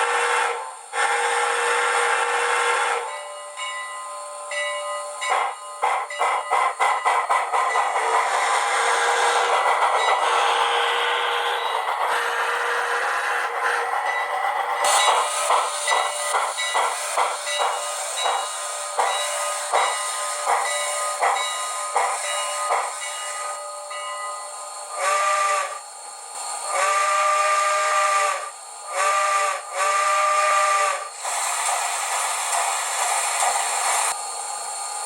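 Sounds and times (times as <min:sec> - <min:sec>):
steam whistle blowing: 0:00.0 - 0:03.6, 0:07.8 - 0:13.9, 0:17.4 - 0:25.8, 0:26.5 - 0:31.6
steam hissing: 0:00.0 - 0:35.0
steam locomotive exhaust chuffs: 0:00.0 - 0:35.0.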